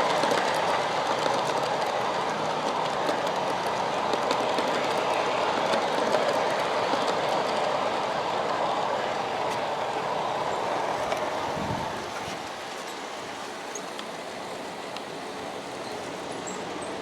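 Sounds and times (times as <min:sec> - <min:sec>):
model train wheels rumbling on rails: 0:00.0 - 0:17.0.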